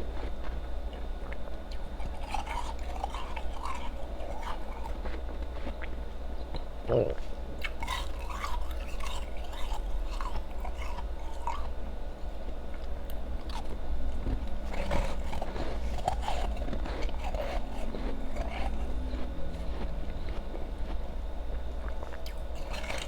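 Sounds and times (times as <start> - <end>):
ice crunching while chewing: 0.0 - 6.0, 7.6 - 23.0
wet chewing in mouth: 0.0 - 23.0.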